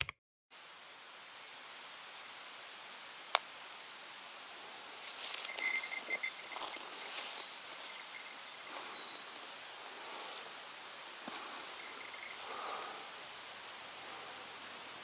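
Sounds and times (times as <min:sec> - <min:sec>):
steady outdoor hiss: 0:00.5 - 0:15.0
rustling and crackling: 0:05.0 - 0:08.0
high chirps: 0:05.3 - 0:09.0, 0:11.7 - 0:12.4.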